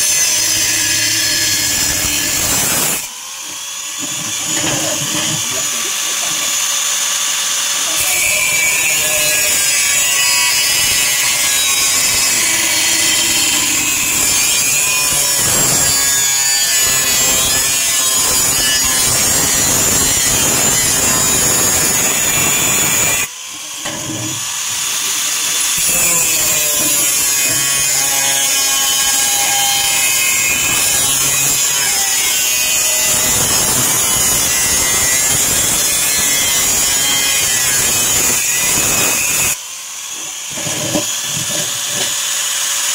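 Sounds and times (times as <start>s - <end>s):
power tool cutting sheet metal: 0.0s - 42.9s.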